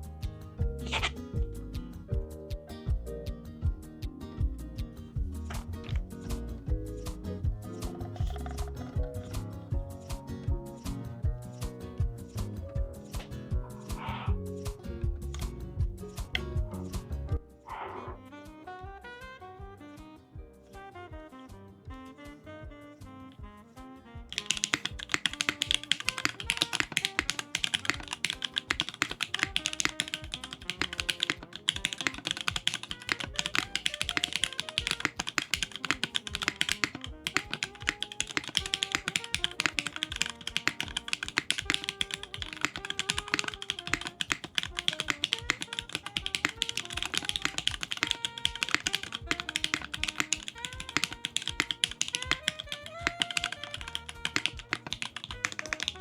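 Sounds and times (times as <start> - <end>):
soft background music: 0.0 - 56.0
fast typing on mechanical keyboard: 0.9 - 1.1, 24.3 - 56.0.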